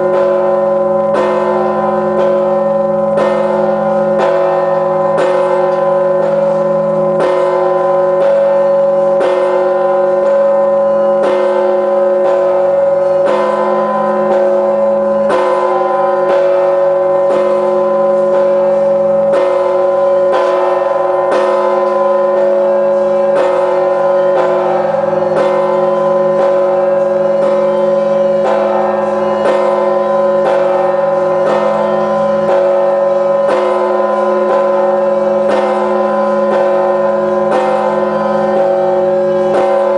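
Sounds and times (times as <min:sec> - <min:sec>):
large church bell tolling: 0:00.0 - 0:39.9.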